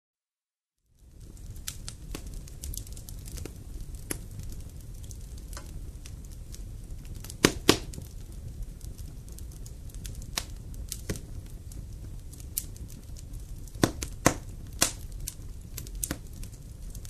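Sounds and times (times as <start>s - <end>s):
campfire crackling: 0.8s - 17.0s
burning wood snapping: 0.9s - 17.0s
loud pops: 7.2s - 8.1s.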